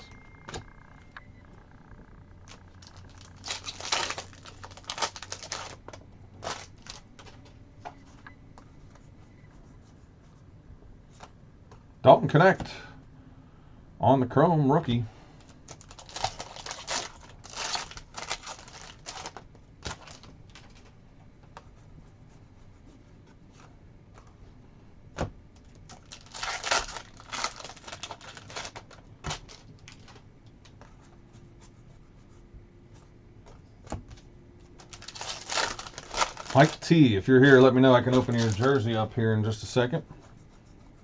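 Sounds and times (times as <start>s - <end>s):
card wrappers rustling and crinkling: 2.5s - 7.6s, 15.4s - 21.0s, 25.6s - 30.2s, 34.7s - 39.8s.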